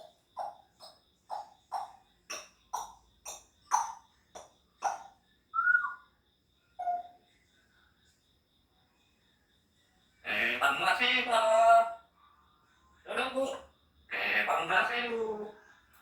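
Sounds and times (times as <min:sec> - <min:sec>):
parrot whistling: 0:04.8 - 0:06.0, 0:06.8 - 0:07.1.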